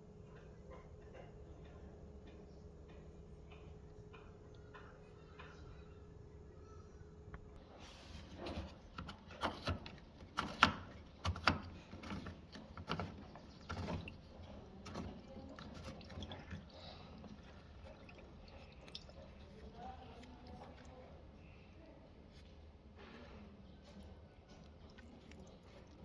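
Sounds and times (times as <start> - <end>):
water dripping and splashing: 9.1 - 21.6, 24.0 - 26.0.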